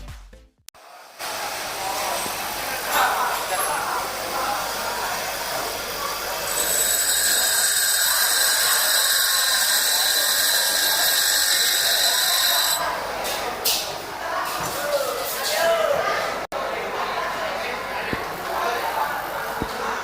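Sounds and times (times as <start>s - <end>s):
grinding wheel whine: 3.3s - 12.9s.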